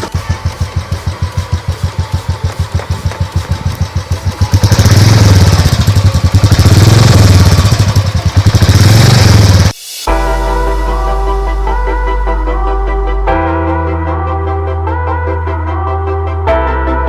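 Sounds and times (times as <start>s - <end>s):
background music: 0.0s - 8.2s, 9.8s - 17.0s
motorcycle engine revving: 0.0s - 9.8s.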